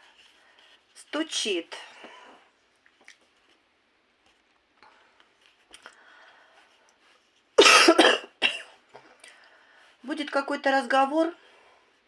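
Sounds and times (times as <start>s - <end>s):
person coughing: 7.6s - 8.8s.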